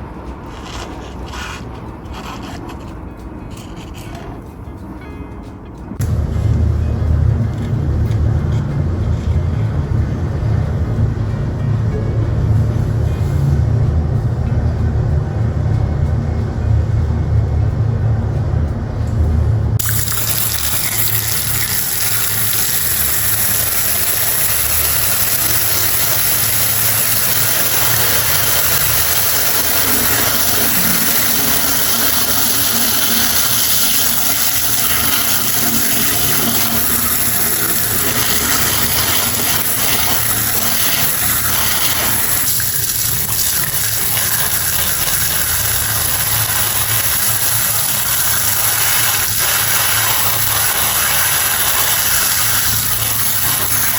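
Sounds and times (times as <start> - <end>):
small pump motor running: 6.0 - 11.3, 19.8 - 53.9
water spraying: 19.8 - 53.9.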